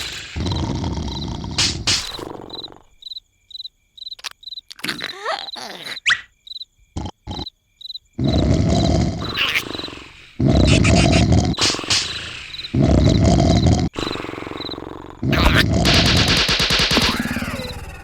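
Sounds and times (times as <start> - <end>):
cartoon larva snoring: 0.0 - 3.0, 4.7 - 6.2, 7.0 - 7.5, 8.2 - 16.2
crickets chirping: 0.0 - 18.0
short squeaks and clicks: 4.1 - 6.3.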